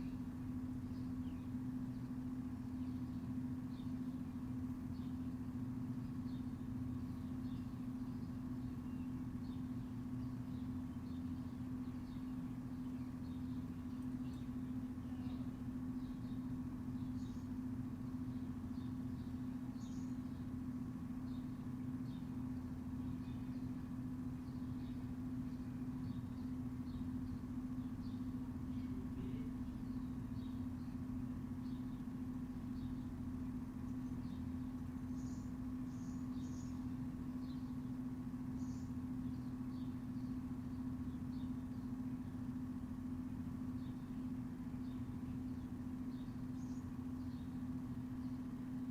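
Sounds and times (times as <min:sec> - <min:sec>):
steady mechanical hum: 0:00.0 - 0:48.9
bird chirps: 0:33.9 - 0:37.9, 0:38.6 - 0:42.0.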